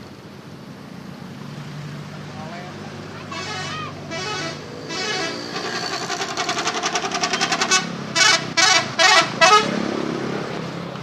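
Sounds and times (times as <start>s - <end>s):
musical air horn trill and blasts: 3.2s - 9.8s.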